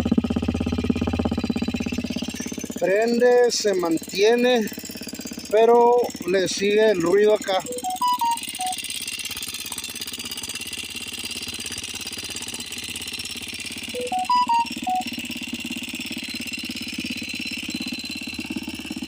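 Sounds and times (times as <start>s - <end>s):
motorcycle engine idling: 0.0s - 19.0s
pitched notes: 7.6s - 8.8s, 14.0s - 15.0s.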